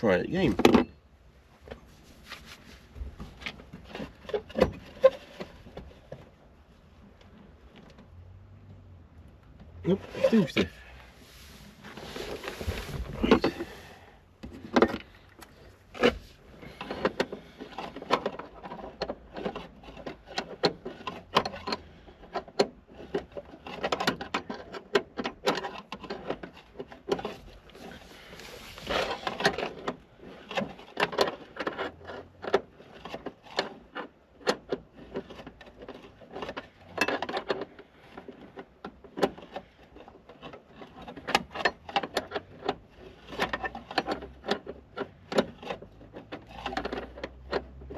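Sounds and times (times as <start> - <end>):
short rustle: 1.6 - 6.1, 9.9 - 14.2, 27.2 - 30.3
spanner clicking and scraping on nut: 14.6 - 28.0, 28.9 - 47.9.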